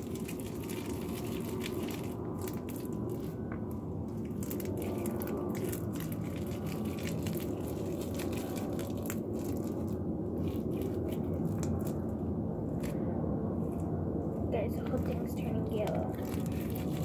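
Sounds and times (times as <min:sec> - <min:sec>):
low hum: 0:00.0 - 0:17.0
slime kneaded by hand crackling: 0:00.0 - 0:17.0.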